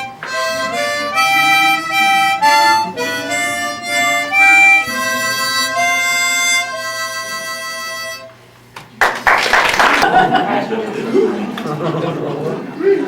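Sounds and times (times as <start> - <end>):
harmonica playing chords: 0.0 - 8.6.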